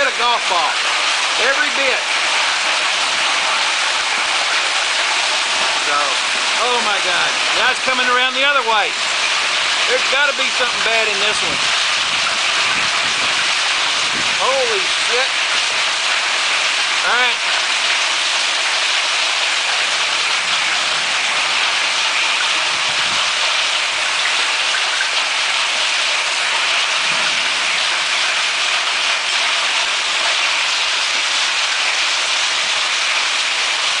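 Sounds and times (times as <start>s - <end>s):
hail and rain pelting down: 0.0s - 34.0s.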